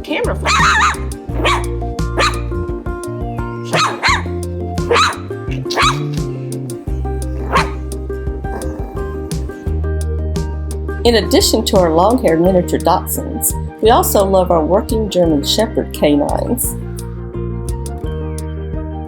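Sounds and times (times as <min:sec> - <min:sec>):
background music: 0:00.0 - 0:19.0
puppy yapping: 0:00.2 - 0:02.5, 0:03.6 - 0:06.3, 0:07.3 - 0:07.9, 0:08.5 - 0:09.3.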